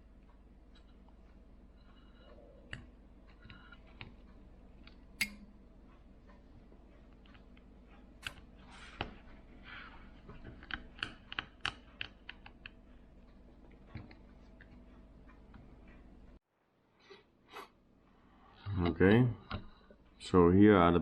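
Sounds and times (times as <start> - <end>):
low steady hum: 0.0 - 16.4.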